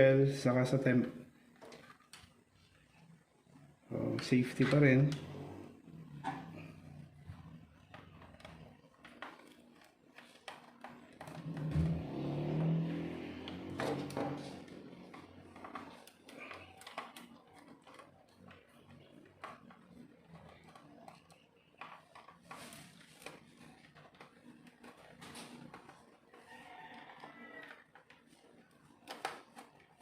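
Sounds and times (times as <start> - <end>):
plastic parts clicking and tapping: 6.1 - 30.0
distant rooster crowing: 26.4 - 27.9.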